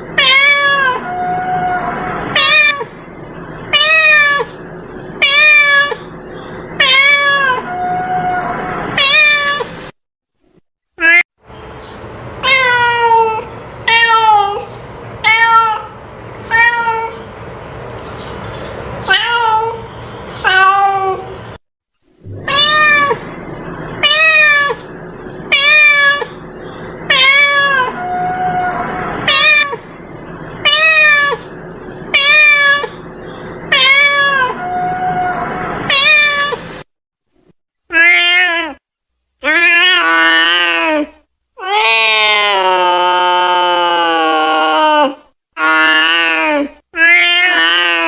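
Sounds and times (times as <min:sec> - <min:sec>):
cat meowing: 0:00.2 - 0:03.0, 0:03.7 - 0:04.6, 0:05.2 - 0:06.1, 0:06.8 - 0:09.7, 0:12.4 - 0:17.2, 0:19.1 - 0:19.8, 0:20.4 - 0:21.3, 0:22.3 - 0:23.3, 0:24.0 - 0:24.9, 0:25.5 - 0:26.4, 0:27.0 - 0:29.9, 0:30.6 - 0:31.5, 0:32.1 - 0:33.0, 0:33.7 - 0:36.6, 0:37.9 - 0:38.8, 0:47.0 - 0:48.0.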